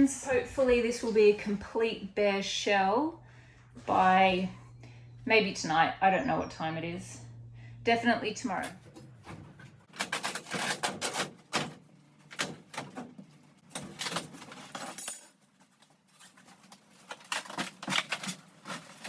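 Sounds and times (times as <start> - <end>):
clatter of hard pieces handled: 13.7 - 19.0.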